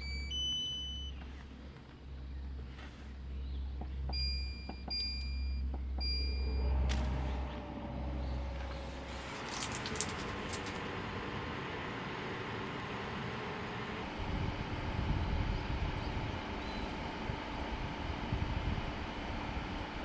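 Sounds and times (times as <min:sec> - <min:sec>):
low steady hum: 0:00.0 - 0:11.8.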